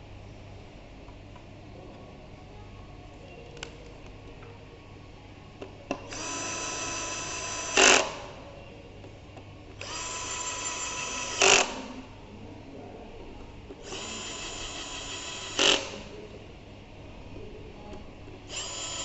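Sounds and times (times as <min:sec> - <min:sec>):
electric screwdriver whine: 0:06.1 - 0:08.2, 0:09.8 - 0:11.8, 0:13.8 - 0:16.0, 0:18.5 - 0:19.0.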